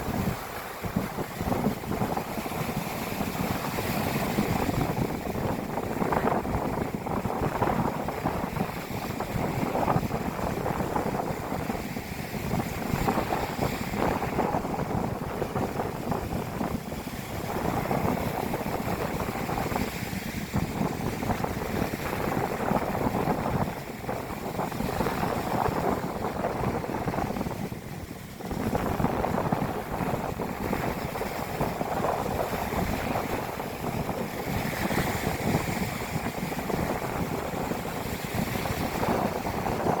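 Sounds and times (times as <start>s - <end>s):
heavy surf: 0.0s - 40.0s
strong wind buffeting microphone: 0.0s - 40.0s.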